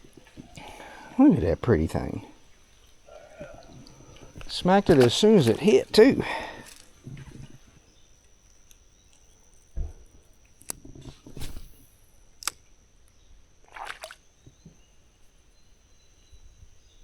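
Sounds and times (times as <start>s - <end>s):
splashes in shallow water: 3.6s - 7.0s, 13.6s - 14.2s.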